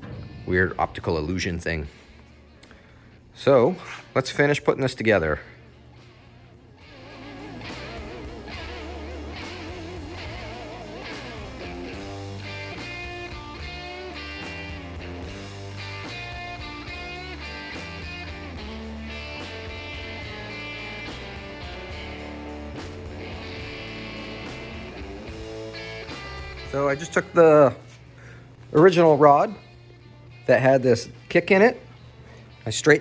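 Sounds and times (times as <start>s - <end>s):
electric guitar tune: 6.6s - 33.0s
steady beat: 6.8s - 29.2s.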